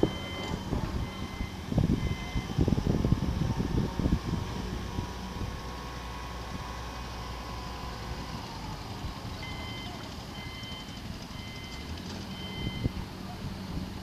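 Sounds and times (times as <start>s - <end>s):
reversing alarm beeping: 0.0s - 2.6s, 9.4s - 13.0s
heavy machine engine rumbling: 0.0s - 14.0s.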